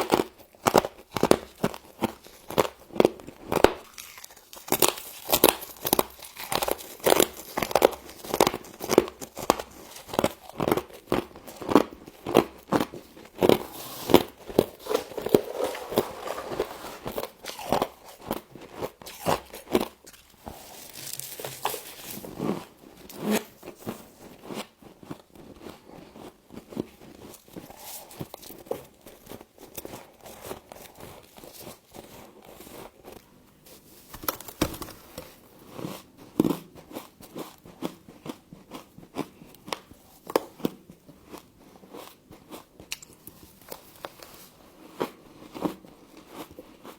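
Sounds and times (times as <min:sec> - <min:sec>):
biting and chewing frost: 0:00.0 - 0:33.3.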